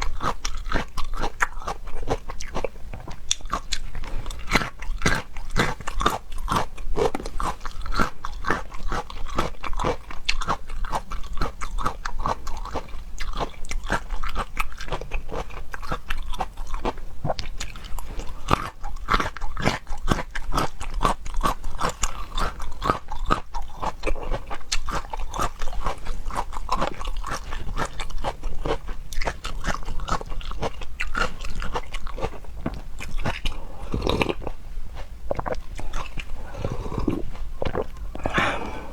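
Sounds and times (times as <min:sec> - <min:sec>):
chewing crunchy food: 0:00.0 - 0:38.9.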